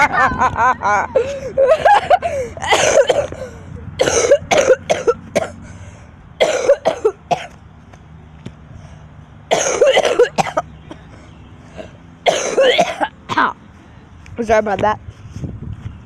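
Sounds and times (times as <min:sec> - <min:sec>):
child coughing: 0:01.8 - 0:03.4, 0:04.0 - 0:05.6, 0:06.4 - 0:07.5, 0:09.5 - 0:10.6, 0:12.3 - 0:13.6.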